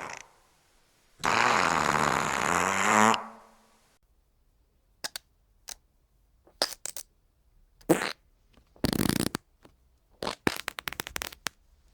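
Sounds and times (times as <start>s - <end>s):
wet fart sounds: 0.0s - 0.5s, 1.2s - 3.6s, 7.9s - 8.2s, 8.8s - 9.4s, 10.2s - 11.5s.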